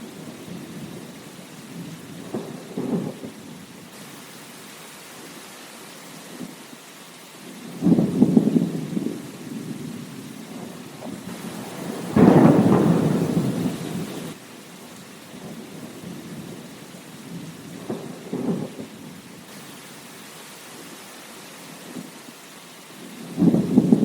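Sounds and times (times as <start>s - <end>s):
thunder rumbling: 0.0s - 3.7s, 7.6s - 14.4s, 15.4s - 19.3s, 23.0s - 24.0s
steady rain: 0.0s - 24.0s.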